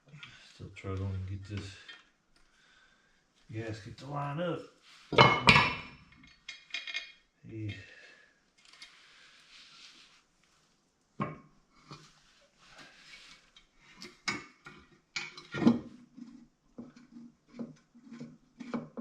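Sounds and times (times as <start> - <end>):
soft rustle: 3.3 - 5.2, 8.6 - 11.1, 11.8 - 14.0
metal parts knocking and clinking: 5.2 - 7.2.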